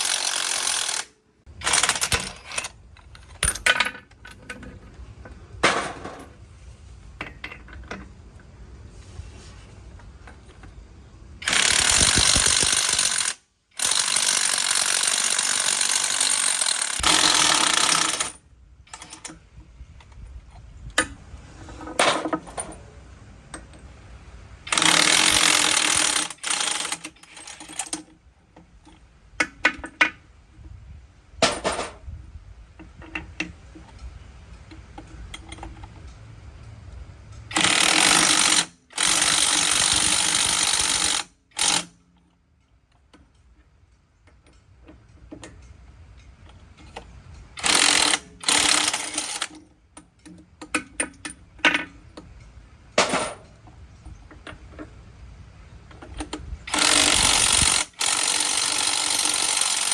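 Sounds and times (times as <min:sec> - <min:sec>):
air impact wrench rattling: 0:00.0 - 0:03.6, 0:11.4 - 0:18.4, 0:24.7 - 0:27.9, 0:37.5 - 0:42.0, 0:47.6 - 0:49.6, 0:53.0 - 0:53.5, 0:56.7 - 0:59.9
tools clinking and knocking: 0:01.6 - 0:06.4, 0:07.2 - 0:08.2, 0:21.0 - 0:22.9, 0:31.4 - 0:32.1, 0:42.9 - 0:55.0.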